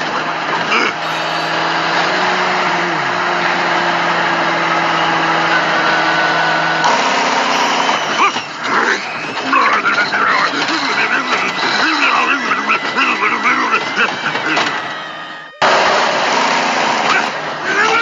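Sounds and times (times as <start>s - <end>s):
road noise: 0.0s - 18.0s
vehicle engine running: 0.8s - 14.8s
brief falling tone: 1.0s - 5.4s.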